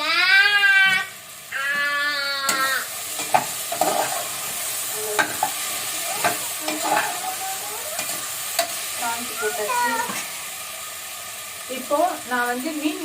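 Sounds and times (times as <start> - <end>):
vegetables sizzling in oil: 0.0 - 13.0
spoon scraping against pot: 3.2 - 4.4, 6.2 - 7.2.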